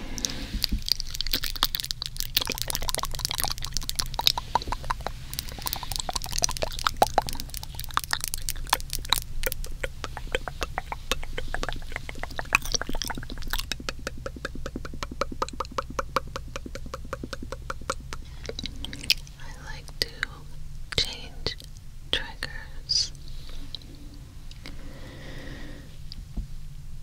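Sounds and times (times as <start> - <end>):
wet mouth clicks and smacks: 0.1 - 22.6.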